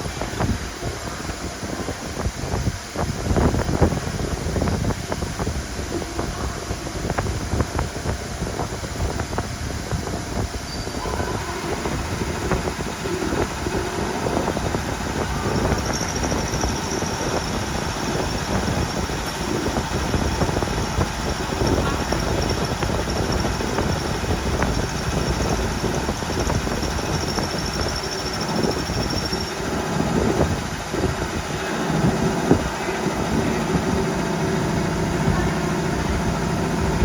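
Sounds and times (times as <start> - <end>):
faint high whine: 10.6 - 34.0
milling machine rattle: 11.4 - 35.2.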